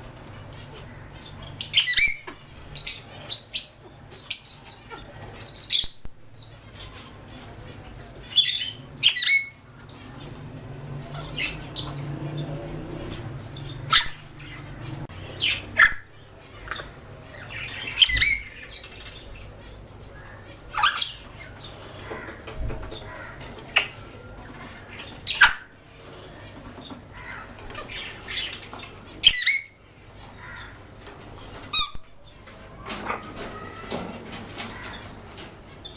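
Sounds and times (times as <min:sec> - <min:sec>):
parrots squawking and whistling: 0:01.6 - 0:07.1, 0:08.3 - 0:09.6, 0:11.1 - 0:12.5, 0:13.1 - 0:19.2, 0:20.7 - 0:21.3, 0:27.2 - 0:29.8, 0:31.7 - 0:32.1.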